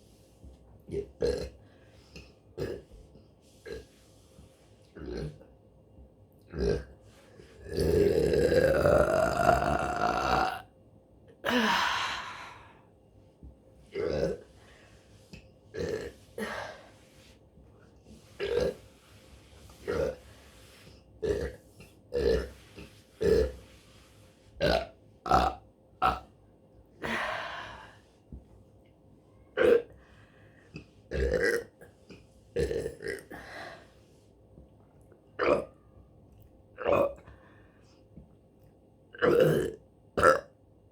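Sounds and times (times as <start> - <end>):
woman burping: 7.8 - 10.7, 39.2 - 40.5.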